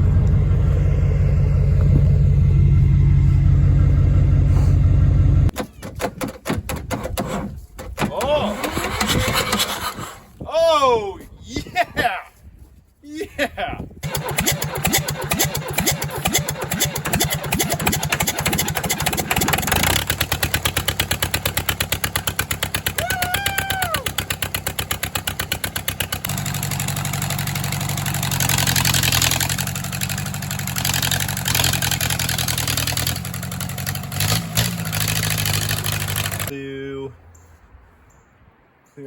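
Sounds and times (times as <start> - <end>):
bulldozer diesel engine running: 0.0 - 5.6, 14.0 - 36.6.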